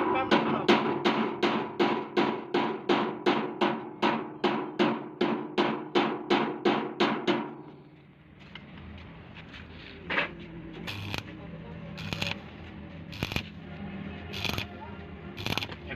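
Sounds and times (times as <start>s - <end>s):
hammer striking metal: 0.0s - 7.7s.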